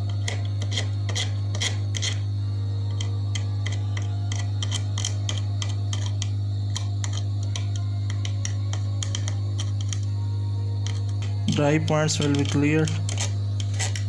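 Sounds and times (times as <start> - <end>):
hot air station hum: 0.0 - 14.0
small ticks: 2.9 - 10.1.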